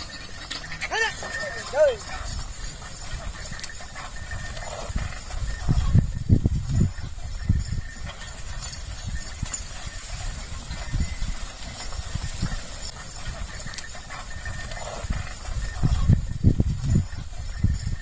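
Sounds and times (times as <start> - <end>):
hooves clopping: 0.0 - 18.0.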